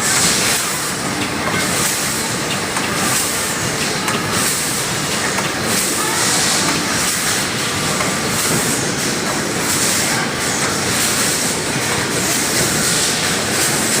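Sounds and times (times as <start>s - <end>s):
machine hiss: 0.0s - 14.0s
packing machine clatter: 0.0s - 14.0s.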